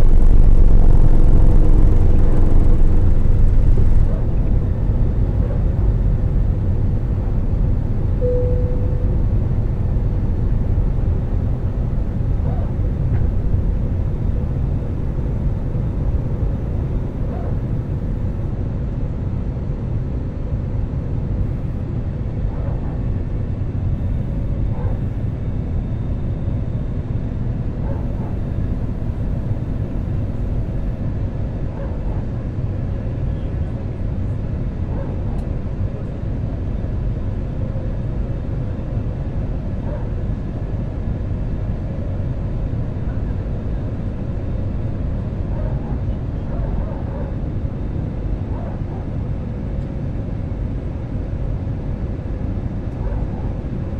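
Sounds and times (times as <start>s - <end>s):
thin steady hum: 0.0s - 18.5s
aircraft cabin low rumble: 0.0s - 53.9s.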